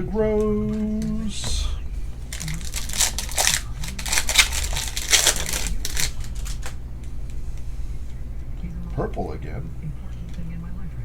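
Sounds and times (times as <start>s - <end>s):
trading cards flicking and rustling: 0.0s - 8.2s.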